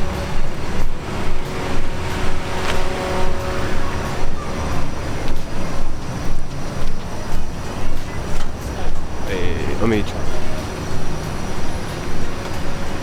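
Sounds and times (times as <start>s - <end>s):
steady hum: 0.0s - 13.0s
street traffic rumble: 0.0s - 13.0s
footsteps walking: 0.4s - 9.1s.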